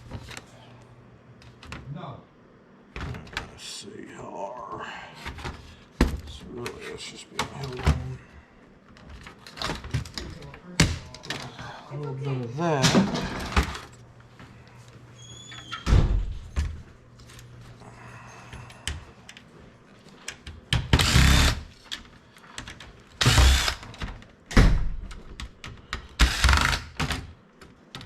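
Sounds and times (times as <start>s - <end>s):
power drill bursts: 21.0s - 21.7s, 23.2s - 23.9s, 26.2s - 26.9s.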